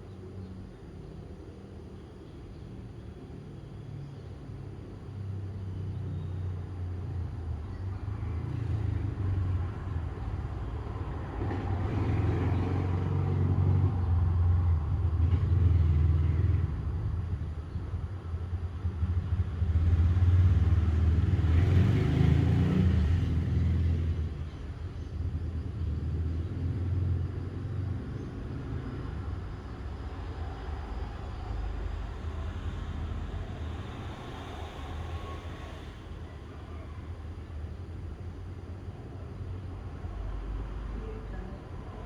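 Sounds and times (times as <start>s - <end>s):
low rumble: 29.4s - 37.3s.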